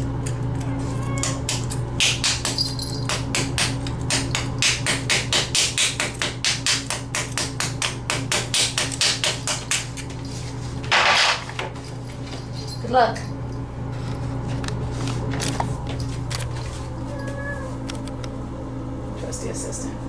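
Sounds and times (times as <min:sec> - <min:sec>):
hammer striking chisel: 0:01.5 - 0:09.8.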